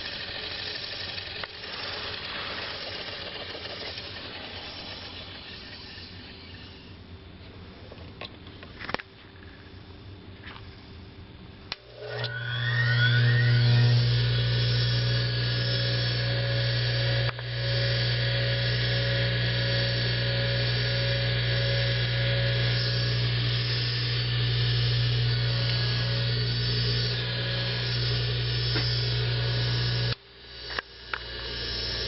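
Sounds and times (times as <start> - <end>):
lathe motor humming and whining: 0.0 - 7.0, 11.6 - 32.0.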